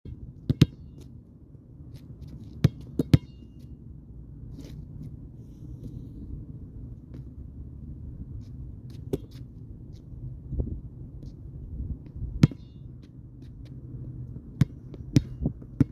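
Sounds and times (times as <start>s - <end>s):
basketball bouncing: 0.5s - 1.1s, 12.4s - 12.8s, 14.6s - 15.9s
low rumble: 3.6s - 15.8s.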